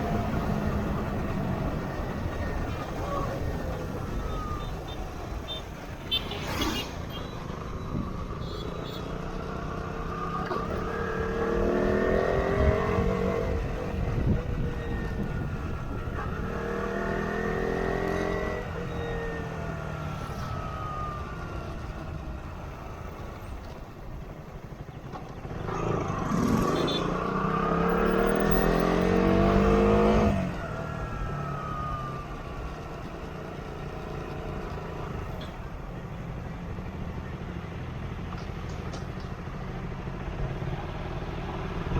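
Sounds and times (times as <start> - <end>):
low rumble of road and wind: 0.0 - 41.9
motorcycle engine accelerating: 9.3 - 23.3, 24.8 - 35.3.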